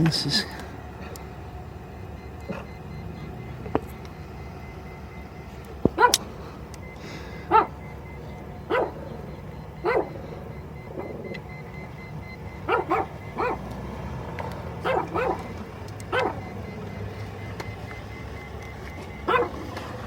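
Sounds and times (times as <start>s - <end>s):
low background hum: 0.0s - 19.7s
dog barking: 6.0s - 6.2s, 7.5s - 7.8s, 8.7s - 9.1s, 9.8s - 10.2s, 12.6s - 13.7s, 14.8s - 15.5s, 16.1s - 16.5s, 19.2s - 19.6s.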